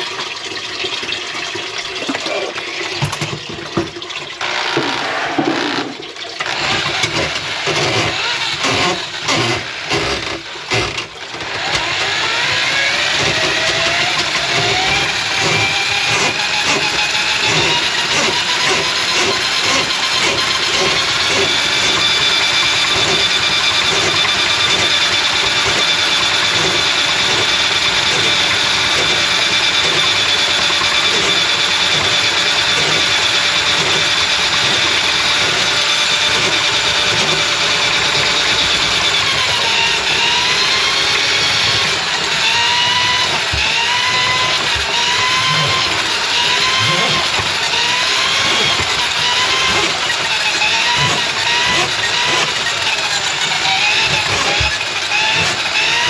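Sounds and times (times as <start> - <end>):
drain cleaning machine motor whine: 0.0 - 56.0.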